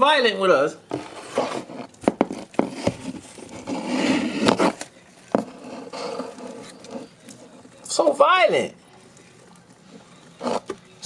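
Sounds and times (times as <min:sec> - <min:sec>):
light scraping: 0:00.9 - 0:07.8.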